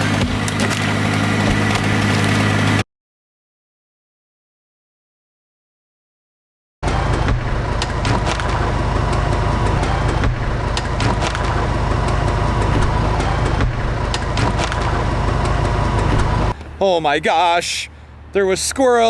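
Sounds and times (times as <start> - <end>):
heavy machinery engine running: 0.0 - 2.8, 6.8 - 19.0
sharp cracks and knocks: 0.0 - 2.8, 6.9 - 9.2, 10.0 - 11.7, 12.7 - 16.8.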